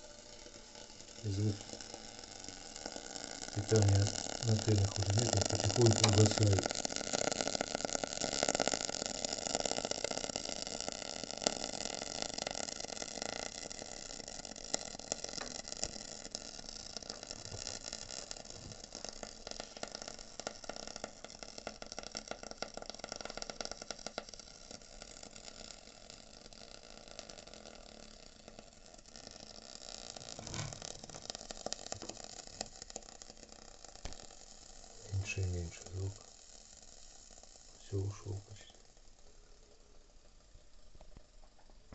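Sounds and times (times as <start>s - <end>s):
water heater crackling and sizzling: 0.0s - 41.9s.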